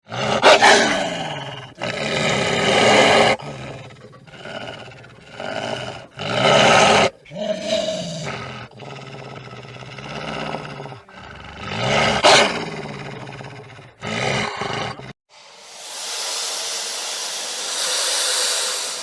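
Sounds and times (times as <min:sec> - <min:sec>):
large animal roaring: 0:00.1 - 0:15.2.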